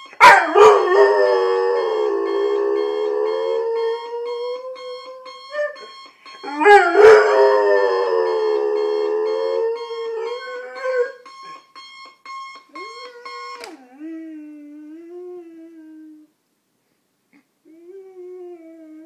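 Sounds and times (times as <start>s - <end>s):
alarm clock beeping: 0.0s - 13.7s.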